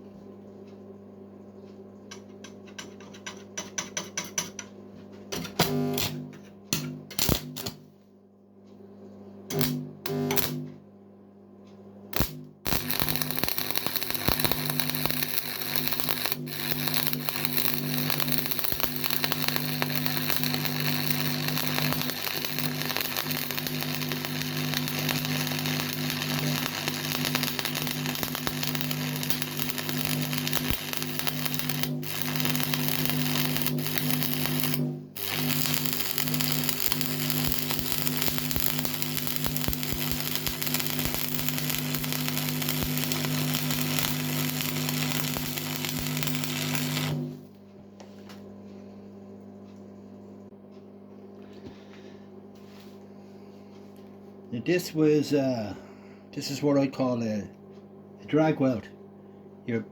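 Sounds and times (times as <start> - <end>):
welder electrical hum: 0.0 - 59.9
welding arc sputtering and crackling: 6.8 - 7.8, 9.5 - 10.7, 12.1 - 47.5.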